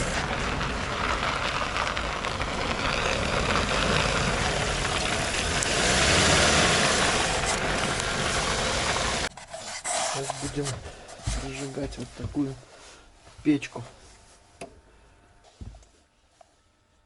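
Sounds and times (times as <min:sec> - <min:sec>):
car engine running: 0:00.0 - 0:09.3.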